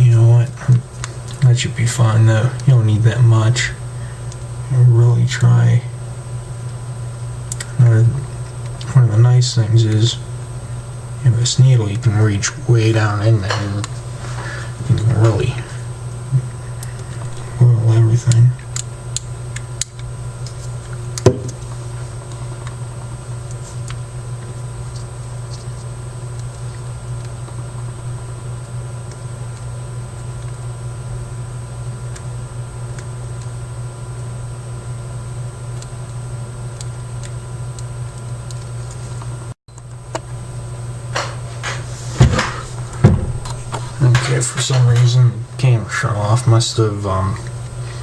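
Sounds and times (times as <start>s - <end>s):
steady low hum: 0.0s - 48.0s
sharp knock of object set down: 21.2s - 21.5s.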